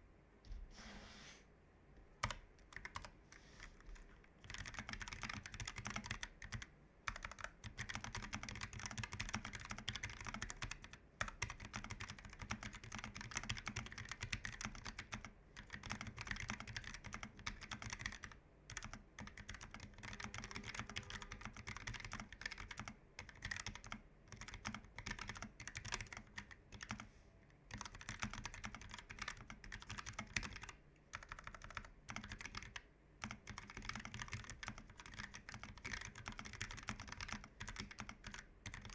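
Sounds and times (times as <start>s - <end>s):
fast keyboard typing: 2.2s - 27.1s, 27.7s - 38.9s.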